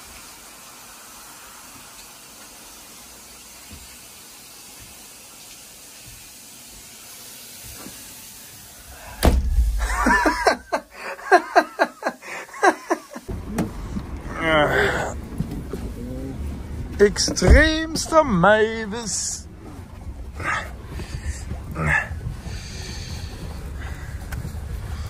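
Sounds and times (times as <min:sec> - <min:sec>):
faint steady hiss: 0:00.0 - 0:25.0
person speaking: 0:15.9 - 0:19.5.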